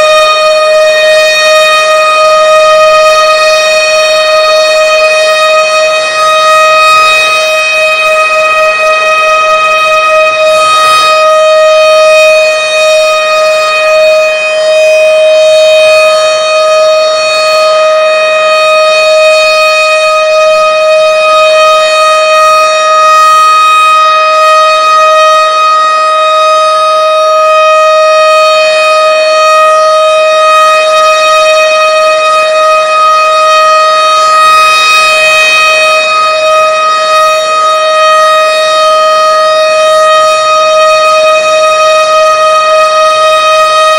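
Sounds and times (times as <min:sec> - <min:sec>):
outdoor warning sirens: 0:00.0 - 0:43.9.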